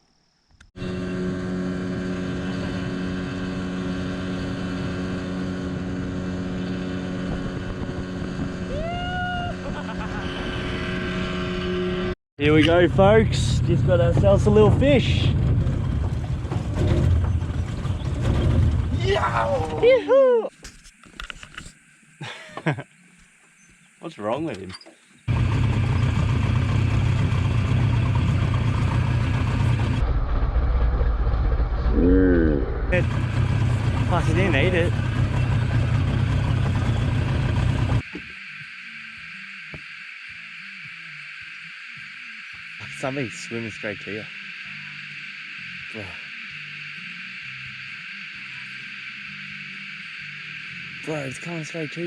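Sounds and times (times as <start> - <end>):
outboard motor running: 0.8 - 20.0, 24.5 - 31.1, 33.0 - 38.8
water noise: 0.8 - 22.2
wind noise: 6.7 - 10.9, 12.6 - 20.0.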